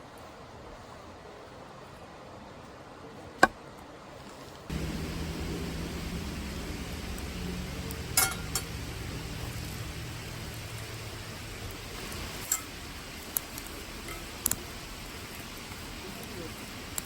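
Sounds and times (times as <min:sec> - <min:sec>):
steady low hiss: 0:03.8 - 0:17.0.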